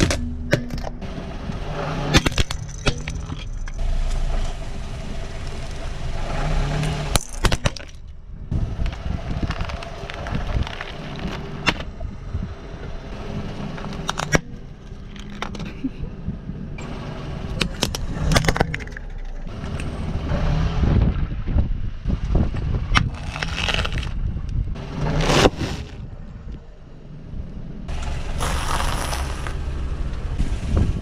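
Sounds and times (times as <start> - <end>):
car engine at low speed: 0.0 - 31.0
objects cracking under tyres: 2.1 - 4.6, 6.8 - 12.0, 13.7 - 15.8, 17.6 - 19.9, 22.5 - 26.1, 28.3 - 29.6.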